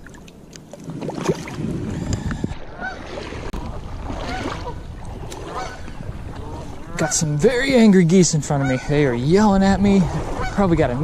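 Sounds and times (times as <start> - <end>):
geese honking: 5.5 - 7.4, 8.4 - 9.3, 10.3 - 11.0.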